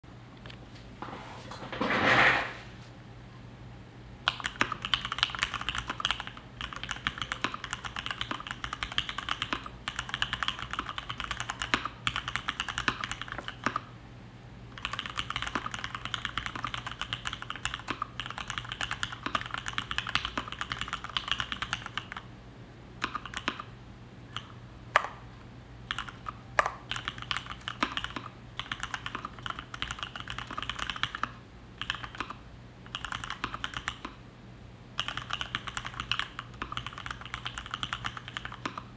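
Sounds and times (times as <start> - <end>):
mechanical keyboard typing: 4.3 - 13.9, 14.8 - 22.2, 23.0 - 23.7, 25.9 - 34.2, 35.0 - 38.9.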